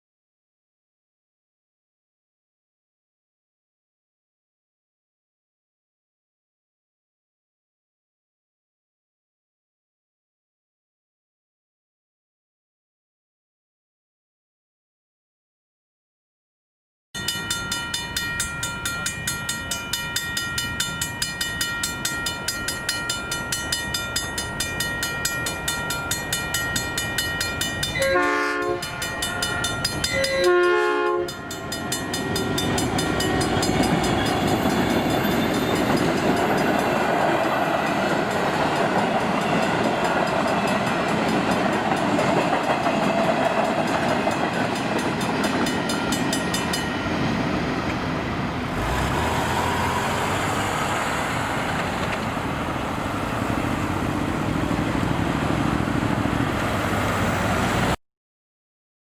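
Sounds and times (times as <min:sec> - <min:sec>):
level crossing bell ringing: 0:17.2 - 0:42.1
train passing rumble: 0:17.2 - 0:58.0
train horn blasts: 0:28.0 - 0:29.3, 0:30.0 - 0:31.6.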